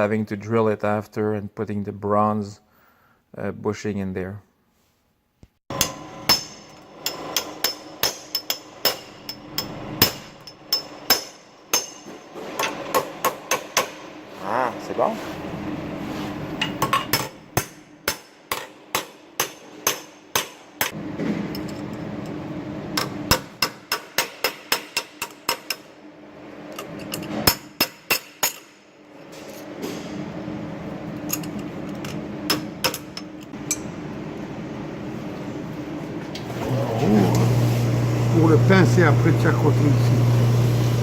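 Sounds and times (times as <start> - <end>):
hammer striking steel: 5.7 - 14.2, 16.6 - 21.0, 23.0 - 25.8.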